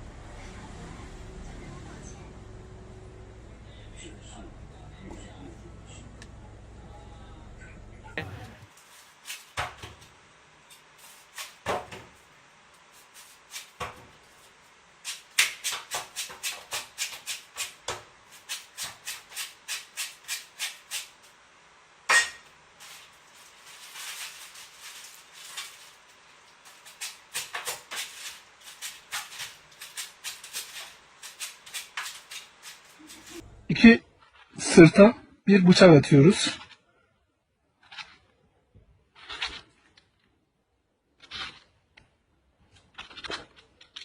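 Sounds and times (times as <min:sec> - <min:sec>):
knife cutting fruit: 0:12.8 - 0:21.2, 0:22.3 - 0:33.4, 0:39.2 - 0:40.0, 0:41.2 - 0:41.8.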